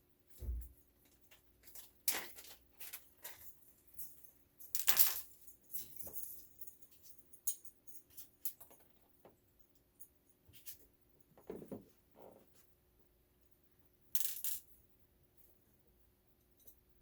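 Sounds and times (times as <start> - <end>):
small metal parts clinking: 1.2 - 9.0, 14.2 - 14.7.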